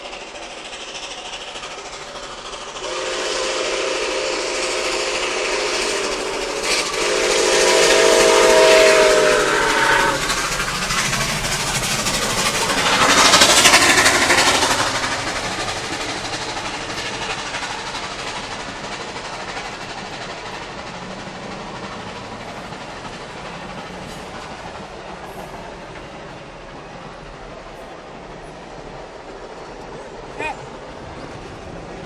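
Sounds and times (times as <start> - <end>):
rush of steam and exhaust: 0.0 - 32.0
train rolling by: 0.0 - 32.0
steam locomotive chime whistle: 2.8 - 10.3.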